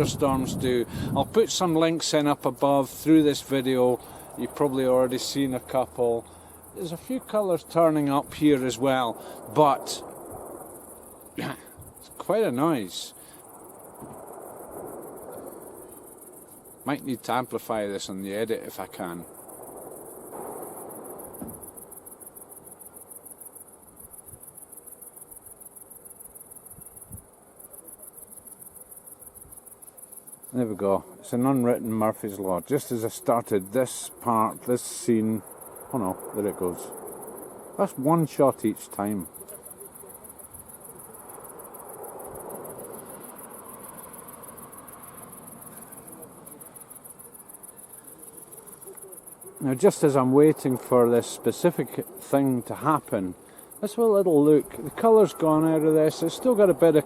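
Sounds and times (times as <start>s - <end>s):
crickets chirping: 0.0s - 57.0s.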